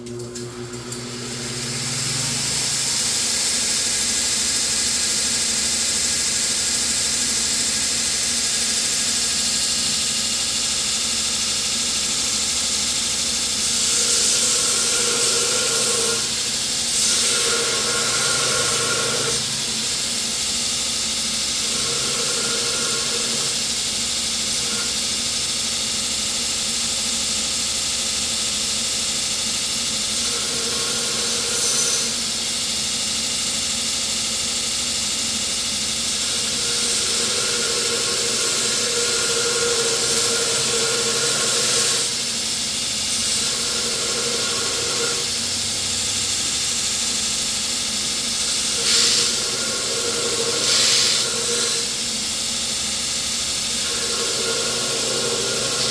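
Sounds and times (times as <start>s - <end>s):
blade grinding whine: 0.1s - 5.4s, 12.4s - 25.6s, 29.7s - 32.6s, 35.2s - 55.9s
belt grinder running: 0.1s - 55.9s.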